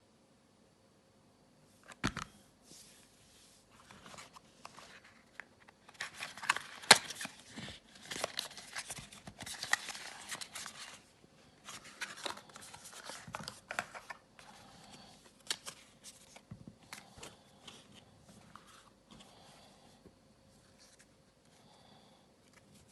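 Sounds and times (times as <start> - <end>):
packaging rustling and crinkling: 3.8 - 19.4.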